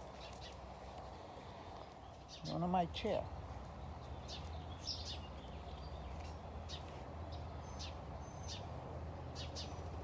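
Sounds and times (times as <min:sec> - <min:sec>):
small bird chirping: 0:04.0 - 0:08.7.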